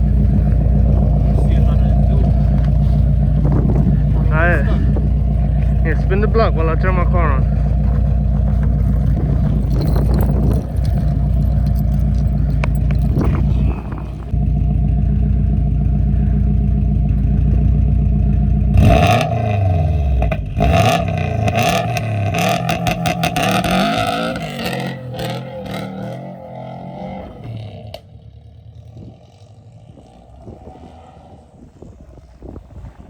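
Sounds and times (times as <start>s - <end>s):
rattling scraping noise: 0.0s - 14.4s
car engine revving: 0.0s - 33.0s.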